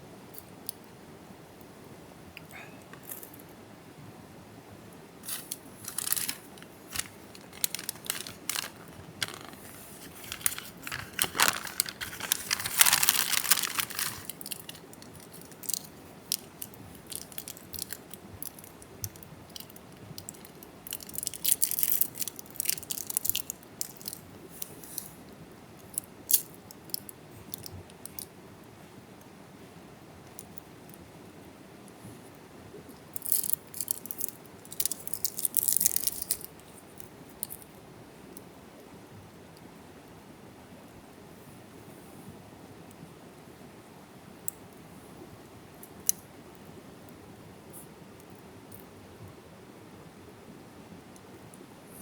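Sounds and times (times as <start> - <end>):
crinkling and rustling: 5.2 - 25.1, 33.2 - 36.5.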